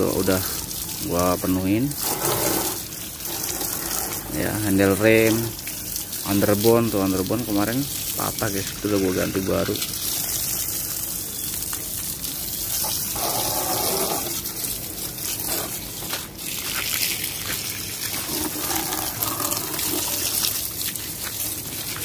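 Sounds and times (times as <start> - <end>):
water spraying from hose: 0.0 - 22.0.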